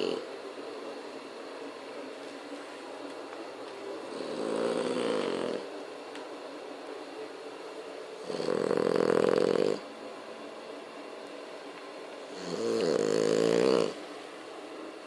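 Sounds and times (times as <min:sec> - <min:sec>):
dog snoring: 0:00.0 - 0:00.3, 0:04.0 - 0:05.7, 0:08.2 - 0:09.9, 0:12.3 - 0:14.0.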